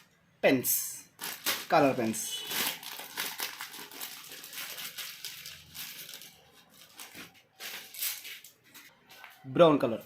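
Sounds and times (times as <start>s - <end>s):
packaging rustling and crinkling: 1.2s - 8.9s.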